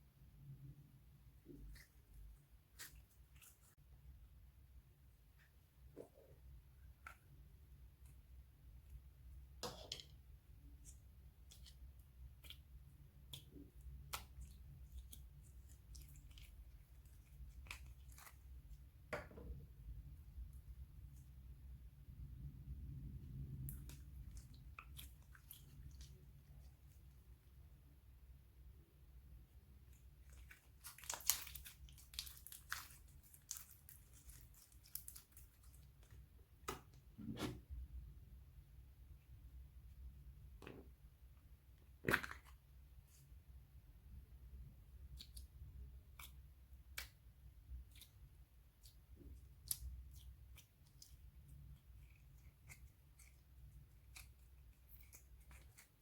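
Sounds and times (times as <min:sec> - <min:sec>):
slime squishing and popping: 0:30.4 - 0:35.6, 0:42.0 - 0:42.6.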